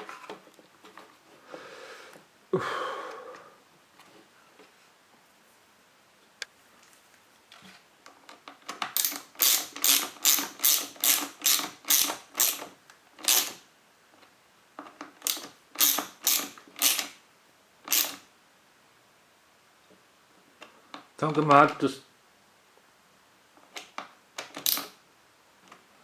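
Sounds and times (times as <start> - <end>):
ratchet driver clicking: 8.9 - 13.6, 15.2 - 17.2, 17.9 - 18.2, 24.4 - 25.0.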